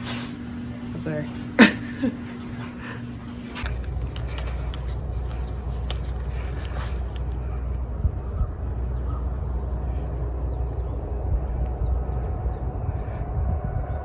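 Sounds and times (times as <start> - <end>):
crickets chirring: 0.0 - 14.0
wind rumble on microphone: 3.6 - 14.0.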